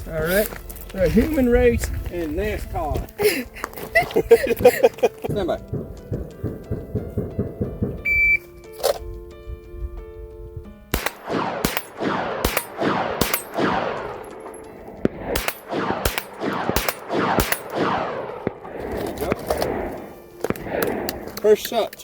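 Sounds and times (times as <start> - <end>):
pistol shots with echo: 5.3 - 8.3, 10.9 - 21.6
shot timer beep: 8.0 - 8.4.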